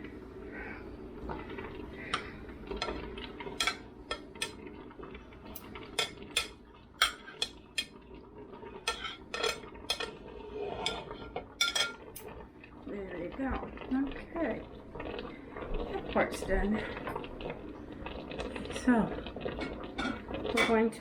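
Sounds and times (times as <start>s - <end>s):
low steady hum: 0.0s - 21.0s
utensils clinking on steel pot: 2.8s - 4.6s, 5.6s - 8.0s, 8.8s - 12.3s, 19.6s - 21.0s.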